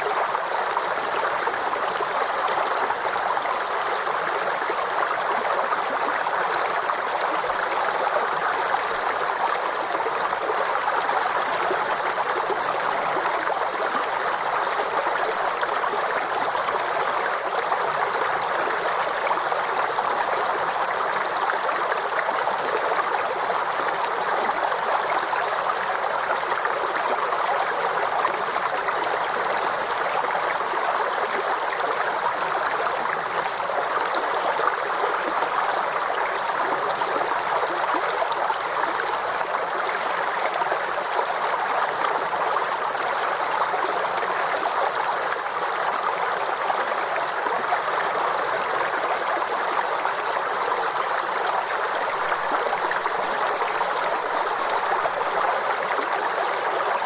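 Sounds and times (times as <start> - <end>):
stream flowing over rocks: 0.0 - 57.0.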